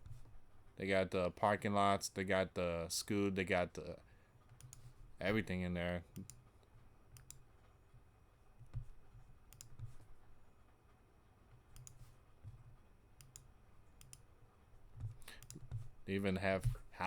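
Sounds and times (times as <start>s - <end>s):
faint computer mouse clicks: 4.5s - 4.9s, 7.2s - 7.4s, 9.5s - 10.0s, 11.7s - 12.1s, 13.2s - 14.3s, 15.0s - 15.8s
soft low thumps: 15.0s - 16.0s, 16.6s - 17.0s.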